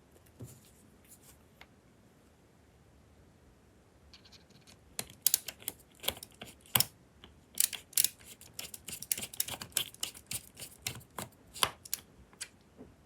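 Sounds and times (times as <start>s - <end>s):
metal parts clicking and tapping: 4.2s - 6.9s, 7.5s - 12.0s.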